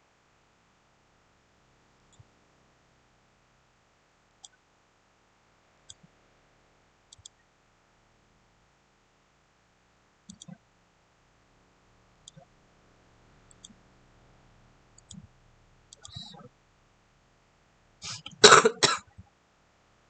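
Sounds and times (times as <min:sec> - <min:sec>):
faint steady hiss: 0:00.0 - 0:20.0
computer mouse clicking: 0:04.4 - 0:04.6, 0:05.9 - 0:06.1, 0:07.1 - 0:07.4, 0:10.3 - 0:10.6, 0:12.2 - 0:12.5, 0:13.5 - 0:13.8, 0:15.0 - 0:15.3, 0:15.9 - 0:16.4.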